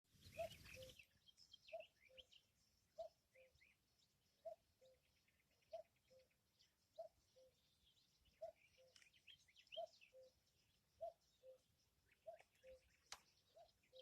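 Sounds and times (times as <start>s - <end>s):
small birds chirping: 0.1s - 14.0s
cuckoo calling: 0.2s - 2.4s, 3.0s - 3.7s, 5.7s - 10.4s, 11.0s - 14.0s.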